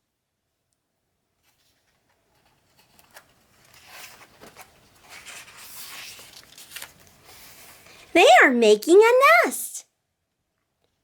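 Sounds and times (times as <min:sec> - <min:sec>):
book pages rustling and turning: 0:01.4 - 0:08.0.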